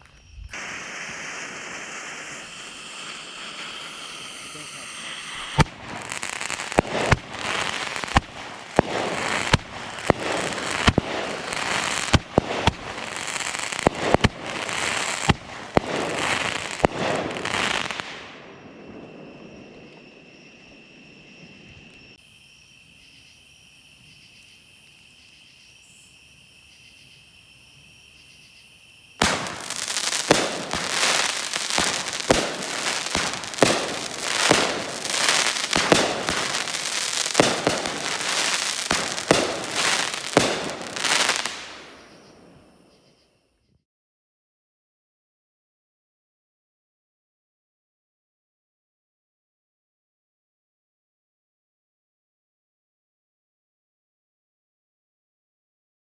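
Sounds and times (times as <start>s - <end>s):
high insect trill: 0.0s - 12.1s, 18.5s - 43.5s
firework shots with crackling: 0.0s - 20.2s, 29.2s - 43.0s.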